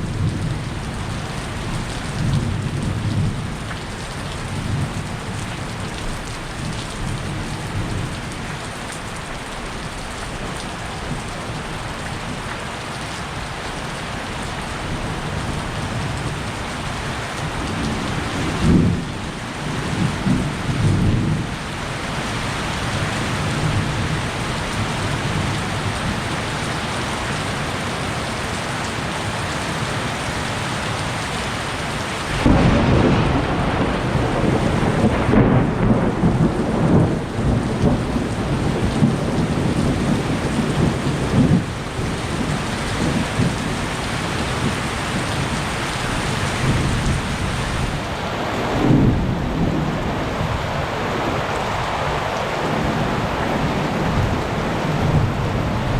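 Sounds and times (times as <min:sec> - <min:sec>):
heavy rain: 0:00.0 - 0:55.9
thunder rumbling: 0:14.9 - 0:26.3, 0:32.3 - 0:55.9.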